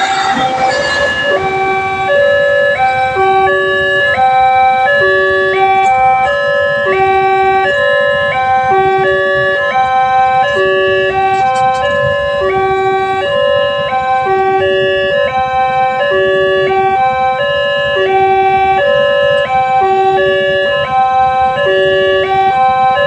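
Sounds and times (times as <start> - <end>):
level-crossing alarm: 0.0 - 23.0.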